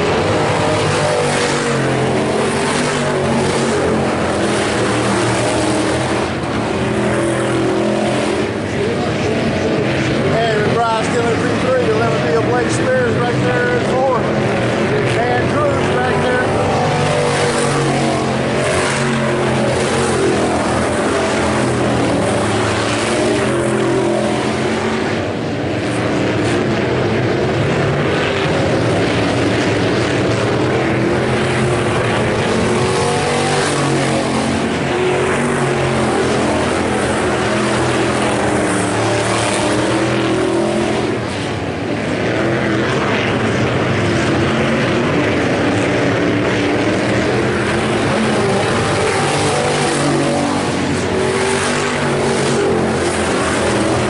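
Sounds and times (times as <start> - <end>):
race car engines circling: 0.0 - 54.0.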